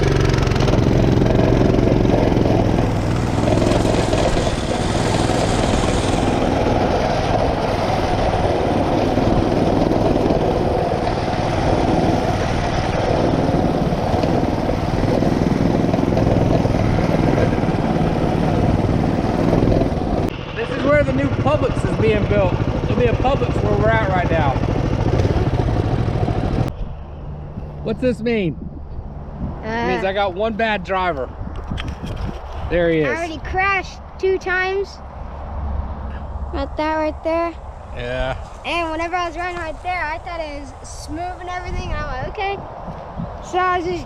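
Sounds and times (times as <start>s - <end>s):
mini bike engine running: 0.0s - 26.7s.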